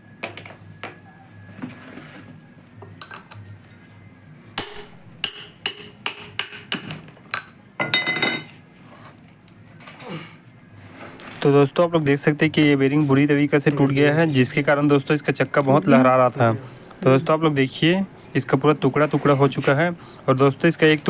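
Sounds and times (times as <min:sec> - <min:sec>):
hammer striking metal: 0:04.6 - 0:07.0.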